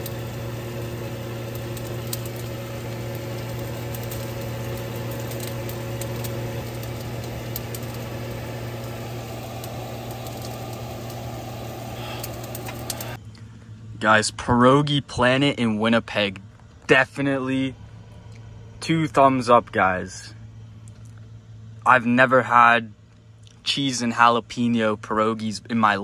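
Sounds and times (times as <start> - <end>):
vehicle engine idling: 0.0 - 14.3
faint clicks: 12.0 - 13.2.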